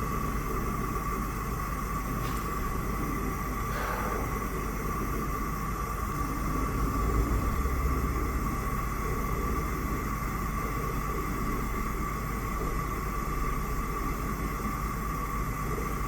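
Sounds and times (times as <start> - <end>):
gas burner flame hissing: 0.5 - 7.0.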